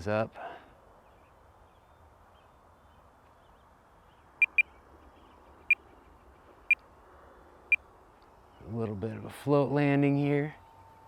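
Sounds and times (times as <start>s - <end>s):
faint outdoor background: 0.0s - 11.0s
short high electronic beeps: 4.4s - 4.6s.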